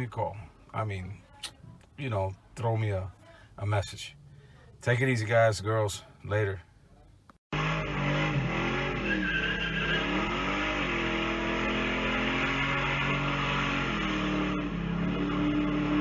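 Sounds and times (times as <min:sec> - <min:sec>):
vehicle engine revving: 0:07.5 - 0:16.0.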